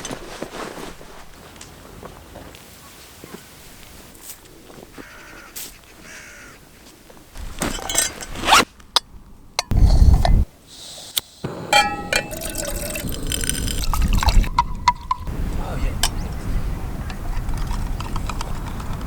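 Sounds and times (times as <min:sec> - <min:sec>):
irregular outdoor sounds: 0:00.0 - 0:19.0
crows cawing: 0:05.0 - 0:06.6.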